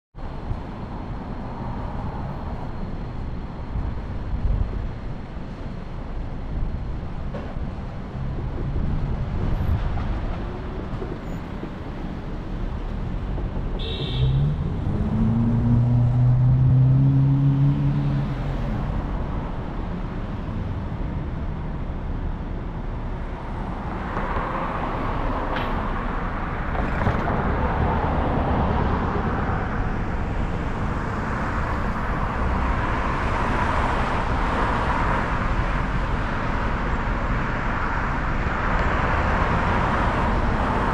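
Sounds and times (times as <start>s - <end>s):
engine note rising: 14.3s - 18.6s.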